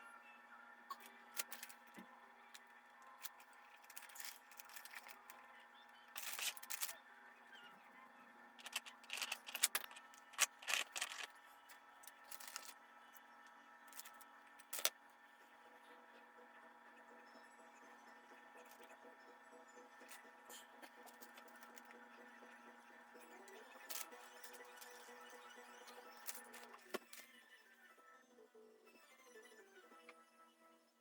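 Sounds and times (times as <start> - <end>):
clicks and rustling scrapes: 3.2 - 5.4, 6.1 - 7.0, 8.6 - 11.4, 12.0 - 12.8.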